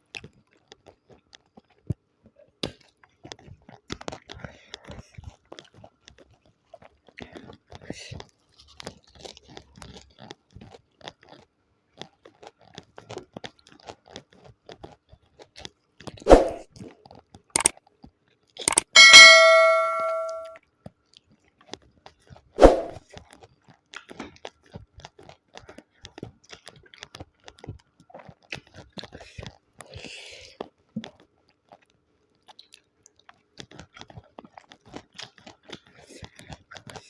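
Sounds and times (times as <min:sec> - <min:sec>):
chewing and mouth clicks: 0:02.8 - 0:16.1, 0:23.8 - 0:37.0
metallic clink: 0:18.7 - 0:20.6.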